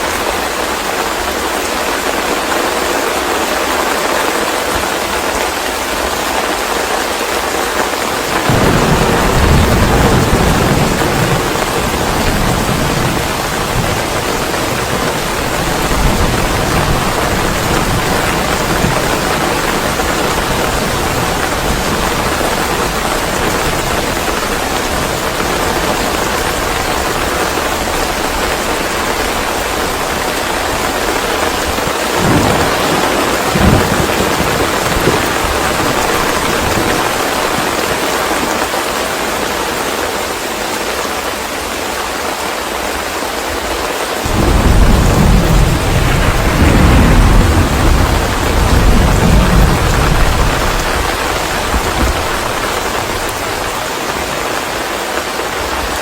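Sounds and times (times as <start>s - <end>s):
heavy rain: 0.0s - 56.0s
thunder rumbling: 8.1s - 38.5s, 44.3s - 54.7s.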